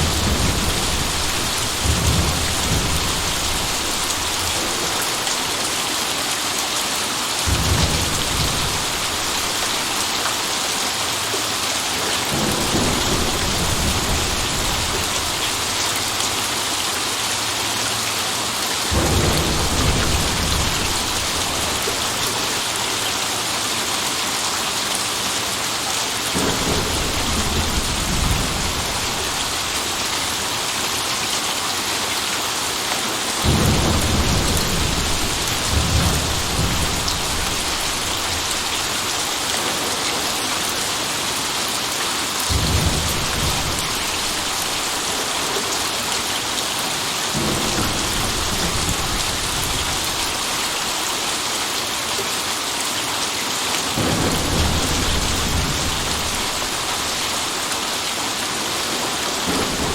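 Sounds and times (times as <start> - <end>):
thunder rumbles: 0.0 - 5.6, 7.5 - 10.5, 12.3 - 16.5, 18.9 - 22.9, 26.4 - 30.5, 33.4 - 40.8, 42.5 - 45.8, 47.3 - 51.0, 54.0 - 57.6, 59.4 - 59.9
heavy rain hissing: 0.0 - 59.9.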